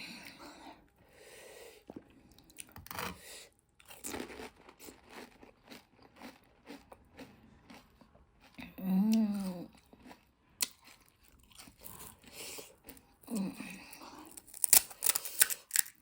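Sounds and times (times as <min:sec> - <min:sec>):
crisp shells crunching in mouth: 0:03.8 - 0:07.8, 0:09.1 - 0:16.0.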